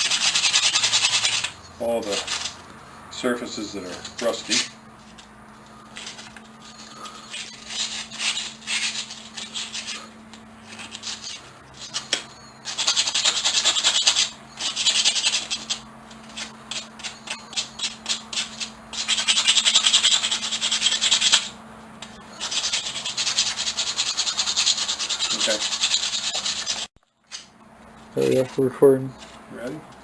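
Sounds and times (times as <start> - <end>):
sandpaper scrubbing rusty steel: 0.0 - 2.6, 3.2 - 4.8, 6.0 - 21.5, 22.3 - 26.9.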